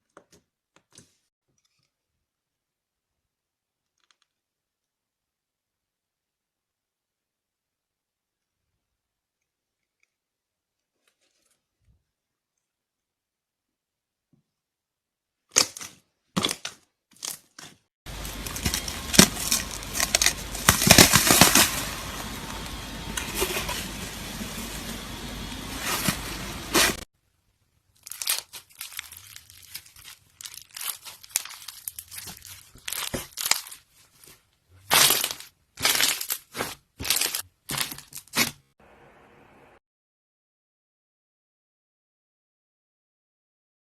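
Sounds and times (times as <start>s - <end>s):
slime crackling and popping: 18.1s - 24.4s, 28.0s - 33.9s, 34.9s - 38.5s.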